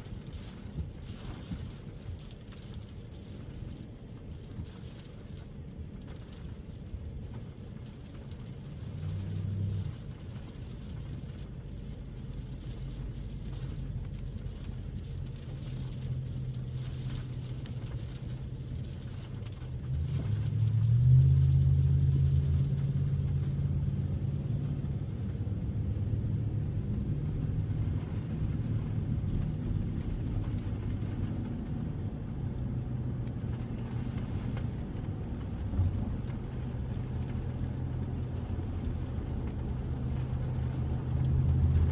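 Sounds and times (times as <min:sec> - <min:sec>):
pickup truck engine rumble: 0:00.0 - 0:41.9
road noise: 0:00.0 - 0:41.9.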